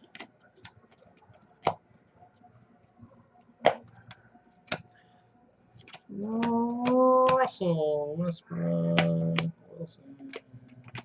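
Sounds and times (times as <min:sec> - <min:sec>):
cards clicking and snapping: 0:00.0 - 0:01.8, 0:03.6 - 0:05.0, 0:05.8 - 0:07.5, 0:08.9 - 0:09.5, 0:10.2 - 0:11.0.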